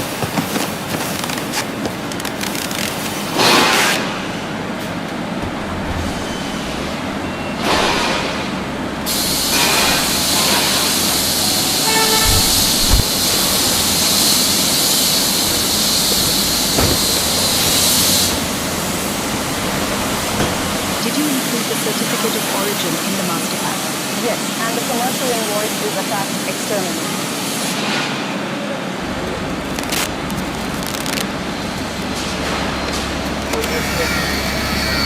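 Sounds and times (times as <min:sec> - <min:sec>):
rumbling machinery: 0:00.0 - 0:23.9, 0:28.0 - 0:35.0
loud hiss: 0:05.7 - 0:27.9.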